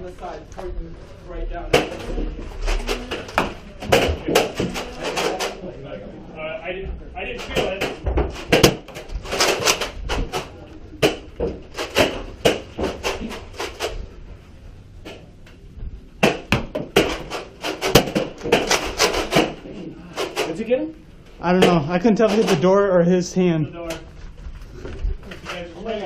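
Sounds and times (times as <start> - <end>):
darts striking doors and walls: 2.9 - 5.6, 7.4 - 14.0, 16.2 - 20.6, 21.5 - 22.7.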